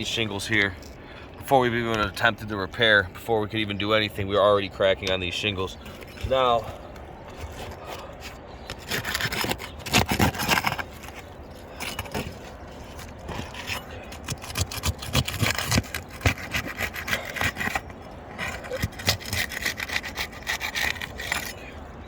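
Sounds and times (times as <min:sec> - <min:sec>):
tool scraping under roof shingles: 0:05.2 - 0:21.8.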